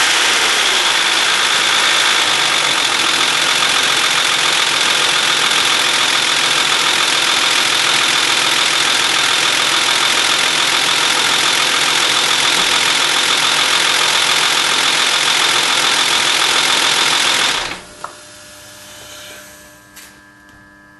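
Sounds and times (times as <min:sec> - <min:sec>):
car engine running: 0:00.0 - 0:18.1
high-pitched hissing mechanical noise: 0:17.9 - 0:20.2.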